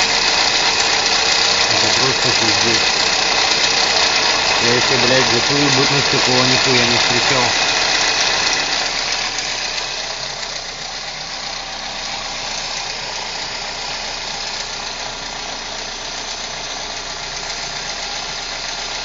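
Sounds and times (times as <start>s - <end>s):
timing chain rattle: 0.0s - 10.1s
car engine idling: 0.0s - 19.0s.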